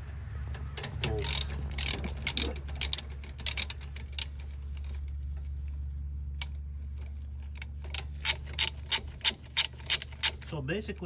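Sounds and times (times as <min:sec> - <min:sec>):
steady low hum: 0:00.0 - 0:11.0
ratchet wrench clicking: 0:00.8 - 0:05.0, 0:06.4 - 0:10.6.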